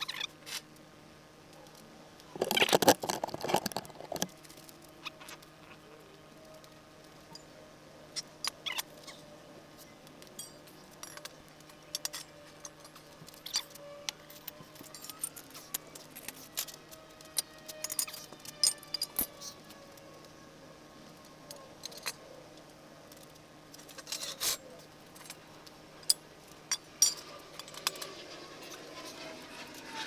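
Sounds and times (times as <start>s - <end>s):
clicks and clinks of metal tools: 10.2s - 13.6s, 14.2s - 19.6s.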